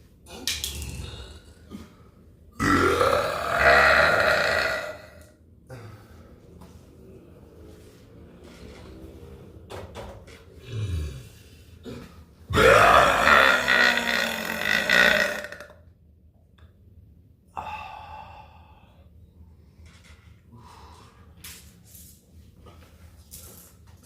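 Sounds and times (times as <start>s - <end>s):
person belching: 2.6s - 5.3s, 11.9s - 15.8s.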